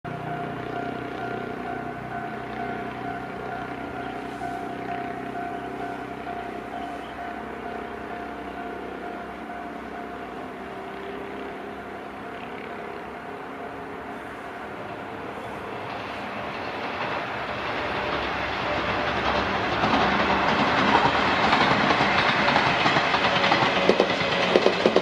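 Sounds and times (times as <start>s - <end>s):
level-crossing warning bell: 0.1s - 25.0s.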